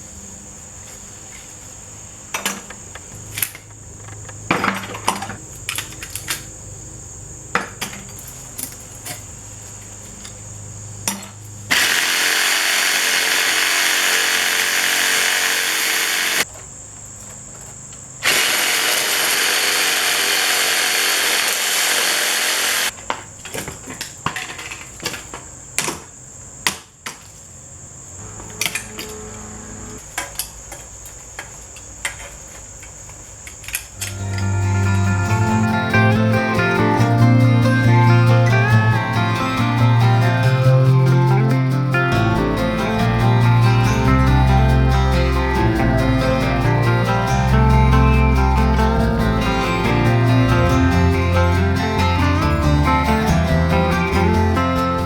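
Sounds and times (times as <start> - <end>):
power tool running: 11.7 - 16.5, 18.2 - 22.9, 34.0 - 40.9
low hum: 34.0 - 55.0.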